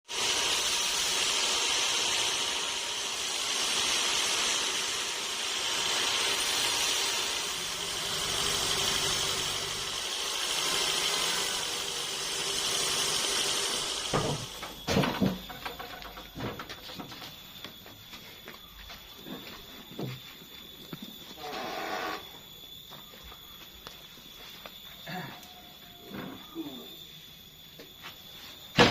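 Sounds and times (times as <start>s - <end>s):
band saw cutting log: 0.0s - 15.2s
sharp knocks and clatters: 14.0s - 18.0s.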